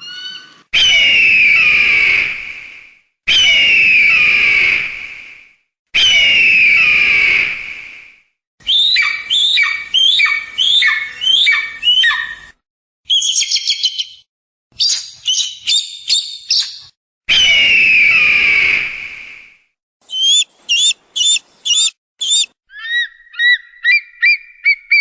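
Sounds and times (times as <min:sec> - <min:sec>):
eagle screaming: 0:00.0 - 0:02.3, 0:06.0 - 0:07.5, 0:08.7 - 0:12.5, 0:20.1 - 0:25.0
eagle piping notes: 0:20.1 - 0:24.5
eagle chattering calls: 0:20.1 - 0:25.0.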